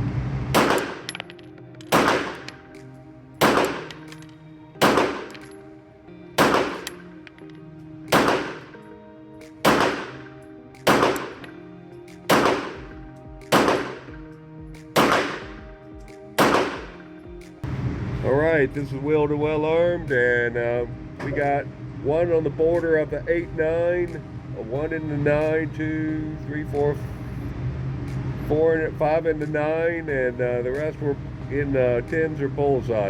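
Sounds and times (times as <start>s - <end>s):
pistol shots: 0.5s - 5.8s, 6.4s - 17.2s.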